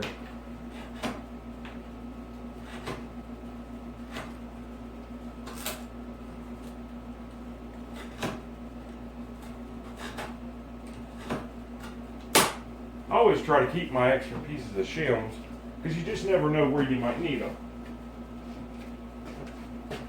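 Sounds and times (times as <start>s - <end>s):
steady low hum: 0.0s - 20.0s
utility knife scoring wood: 0.7s - 1.2s, 9.4s - 12.0s.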